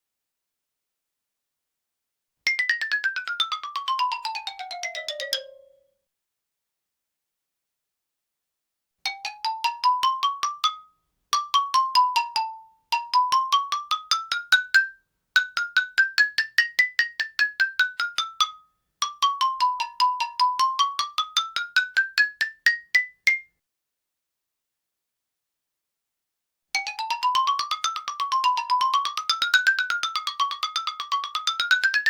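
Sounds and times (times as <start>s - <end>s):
xylophone runs: 26.8s - 32.0s.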